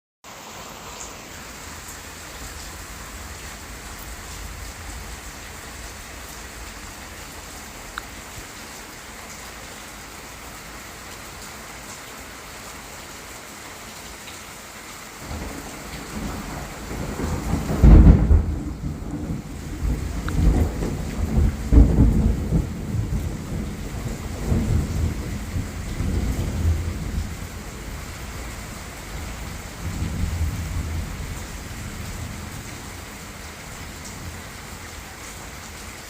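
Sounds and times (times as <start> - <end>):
steady rain falling: 0.2 - 36.0
deep rumble of thunder: 15.2 - 34.6.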